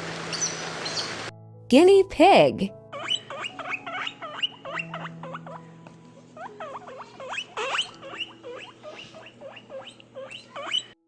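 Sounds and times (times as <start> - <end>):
guinea pig wheeking: 2.9 - 5.7, 6.3 - 11.0.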